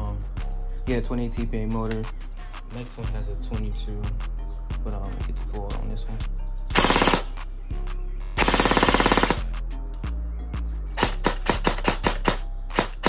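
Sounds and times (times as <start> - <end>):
airsoft gun full-auto burst: 6.7 - 7.3, 8.4 - 9.5, 11.0 - 13.0
airsoft gun single shots: 6.7 - 7.4, 8.4 - 9.4, 11.0 - 13.0.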